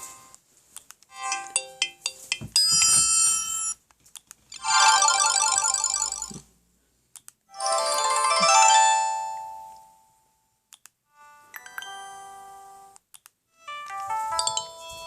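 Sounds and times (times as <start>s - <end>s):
electronic phone ringtones: 4.6s - 6.4s, 13.6s - 15.0s.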